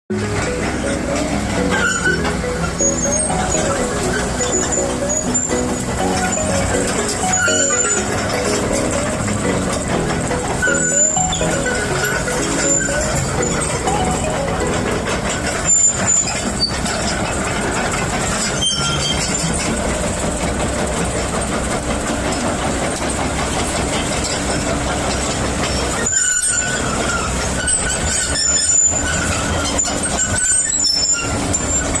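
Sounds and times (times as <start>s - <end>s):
high squeals: 0.1s - 17.8s, 25.8s - 32.0s
excavator running: 0.1s - 32.0s.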